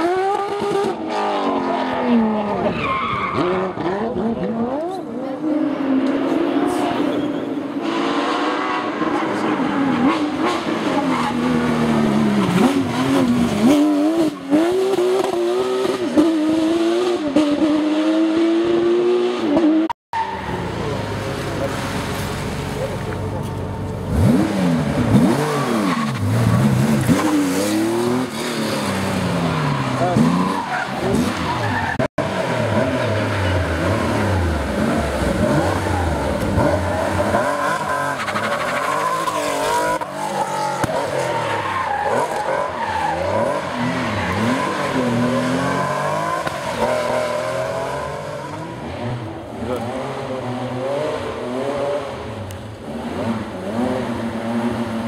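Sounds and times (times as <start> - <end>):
tyres skidding: 0.0 - 18.2, 19.4 - 55.0
rally car engine revving: 0.0 - 55.0.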